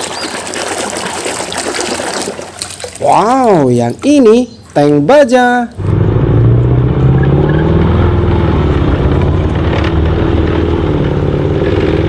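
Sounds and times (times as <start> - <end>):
engine-like rumble with low drone: 5.8 - 12.0.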